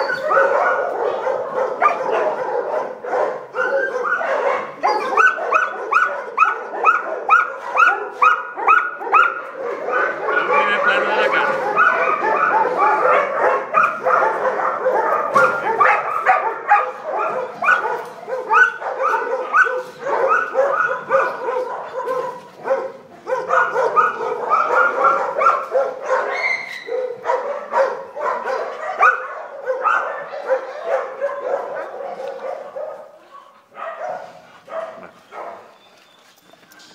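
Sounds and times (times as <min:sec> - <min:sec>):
puppy yipping and whining: 0:00.0 - 0:00.6, 0:03.5 - 0:09.4, 0:23.5 - 0:27.4.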